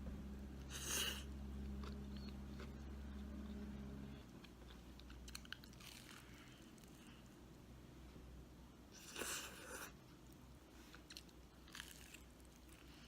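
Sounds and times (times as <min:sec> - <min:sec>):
steady low hum: 0:00.0 - 0:13.0
chewing crisp food: 0:00.7 - 0:03.7, 0:04.4 - 0:07.1, 0:10.8 - 0:13.0.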